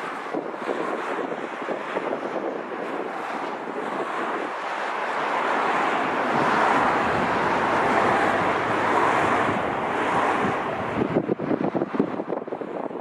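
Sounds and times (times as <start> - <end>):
jet engine rush: 0.0 - 13.0
wind: 0.0 - 13.0.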